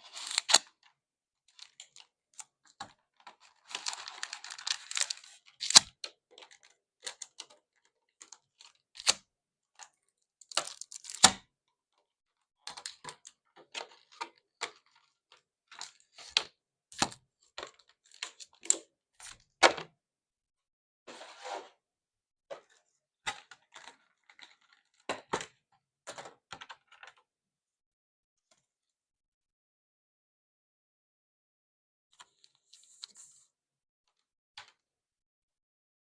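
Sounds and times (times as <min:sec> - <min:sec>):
cardboard and plastic clicks and rustles: 0:00.1 - 0:11.5, 0:12.7 - 0:19.5, 0:22.5 - 0:27.3.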